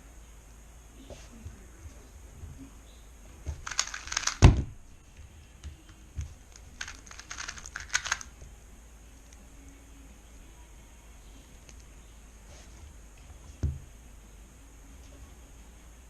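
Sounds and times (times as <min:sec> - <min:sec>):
puzzle cube rapid clacking: 0:03.6 - 0:04.6, 0:06.5 - 0:08.3
loud thump: 0:04.4 - 0:04.8.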